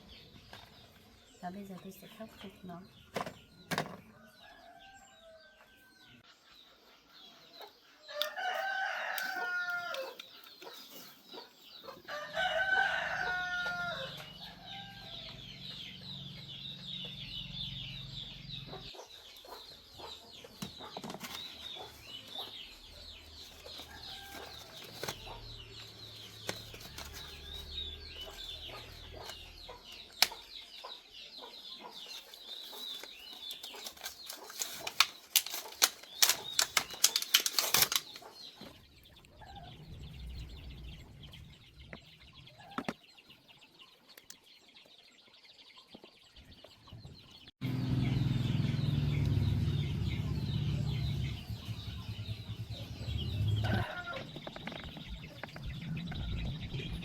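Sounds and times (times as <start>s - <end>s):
rooster crowing: 8.1s - 10.2s, 12.1s - 15.3s, 53.6s - 54.4s.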